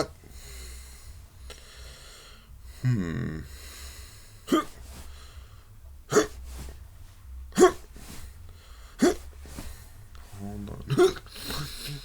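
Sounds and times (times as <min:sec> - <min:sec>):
short sharp hiccups: 0:06.1 - 0:06.4, 0:07.6 - 0:07.8.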